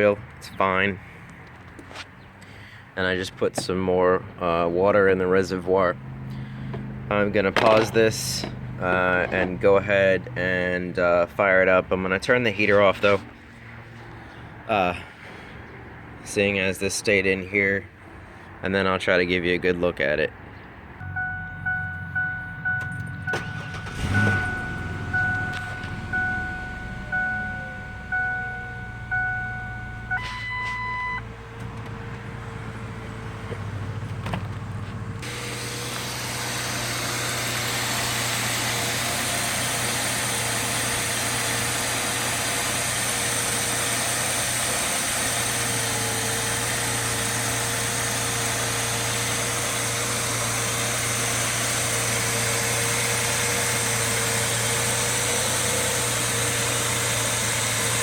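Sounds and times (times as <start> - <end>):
truck engine idling: 5.8 - 10.6, 21.0 - 58.0
dashboard warning chimes: 21.0 - 31.4.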